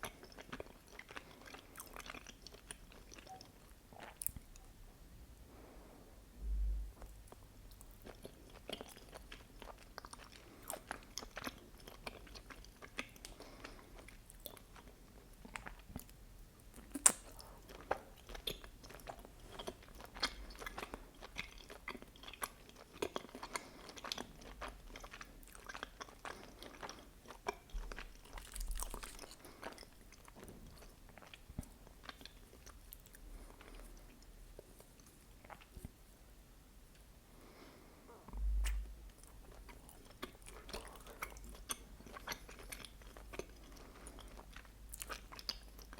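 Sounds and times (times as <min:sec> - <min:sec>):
chewing sticky food: 0:00.0 - 0:04.8, 0:06.9 - 0:36.1, 0:38.3 - 0:45.9
mouth clicks: 0:38.3 - 0:38.9.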